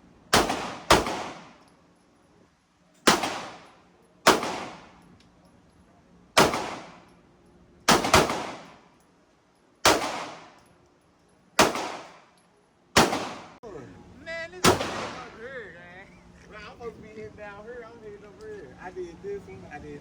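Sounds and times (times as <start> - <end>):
pistol shots with echo: 0.3 - 1.6, 3.0 - 5.0, 6.4 - 7.1, 7.9 - 8.8, 9.8 - 10.6, 11.6 - 12.3, 13.0 - 13.6, 14.6 - 15.4.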